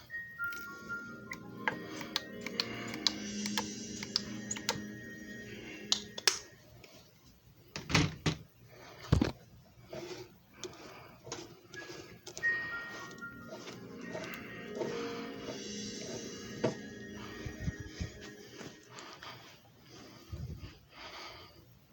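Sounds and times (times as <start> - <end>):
soft background music: 0.0 - 7.2, 10.8 - 19.6.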